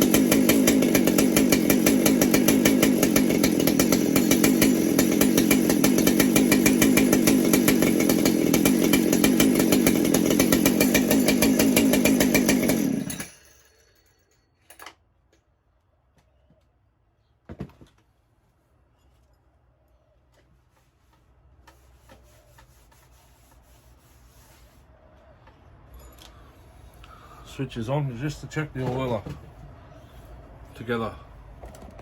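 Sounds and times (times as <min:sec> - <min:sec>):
chainsaw engine running: 0:00.0 - 0:13.8.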